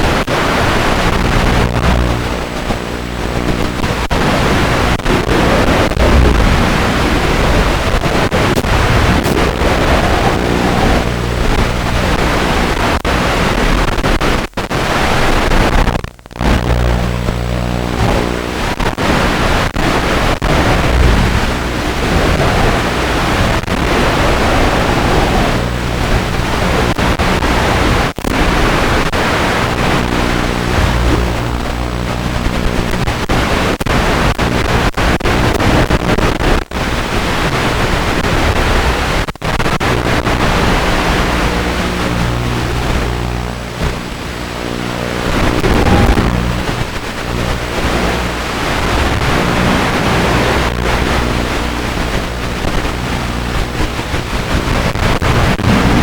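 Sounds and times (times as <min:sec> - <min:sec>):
steady loud hiss: 0:00.0 - 0:56.0
quadcopter motors whining: 0:20.7 - 0:26.4.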